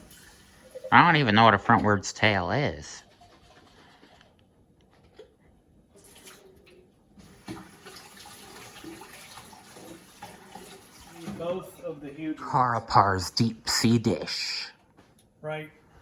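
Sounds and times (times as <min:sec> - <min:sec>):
water running from a tap: 0:00.0 - 0:00.9, 0:07.2 - 0:11.5.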